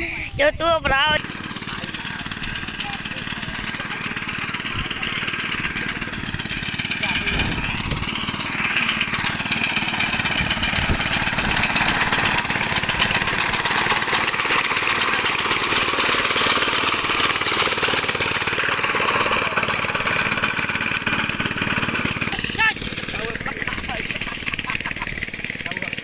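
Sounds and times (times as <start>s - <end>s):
small engine running: 0.0s - 26.0s.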